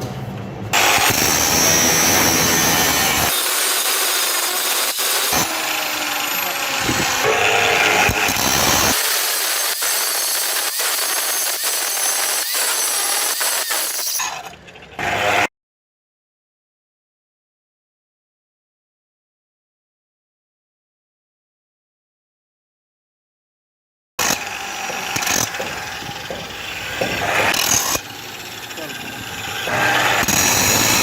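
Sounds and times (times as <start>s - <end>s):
harsh grinding or sawing: 0.8s - 15.5s, 24.2s - 31.0s.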